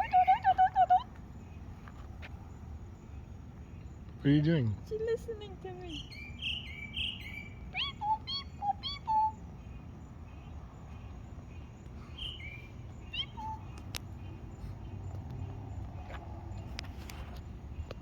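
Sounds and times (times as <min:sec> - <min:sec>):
woman imitating bird calls: 0:00.0 - 0:01.2, 0:07.7 - 0:09.4, 0:13.1 - 0:13.7
bird chirping: 0:00.0 - 0:18.0.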